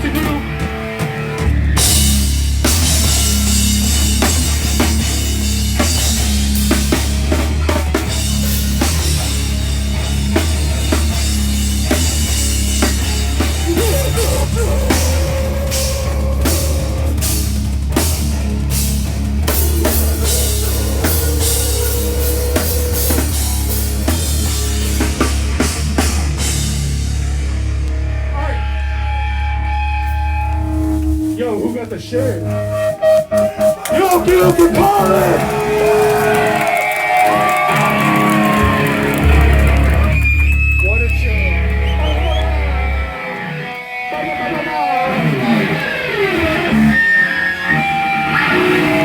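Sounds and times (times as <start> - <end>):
pounding drums: 0.0 - 27.4, 30.6 - 42.3
heavy rock band playing: 0.0 - 49.0.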